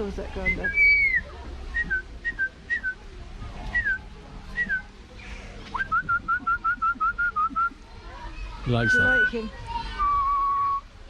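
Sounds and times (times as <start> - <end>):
parrot whistling: 0.6 - 1.2
man whistling: 5.8 - 7.7, 10.0 - 10.8.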